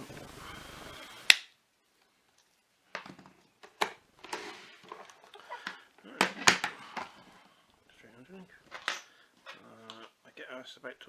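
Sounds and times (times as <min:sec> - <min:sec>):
plastic parts clicking and knocking: 0:02.9 - 0:07.4, 0:08.6 - 0:10.2.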